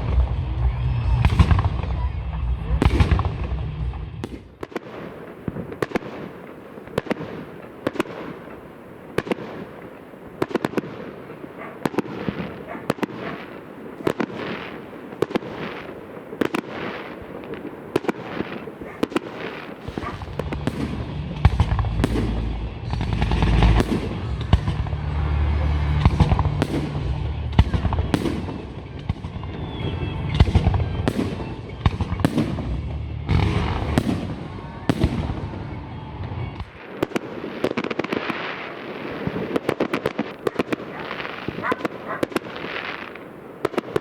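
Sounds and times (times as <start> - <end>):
low rumble: 0.0 - 4.4, 20.0 - 36.6
fireworks bursting: 0.0 - 44.0.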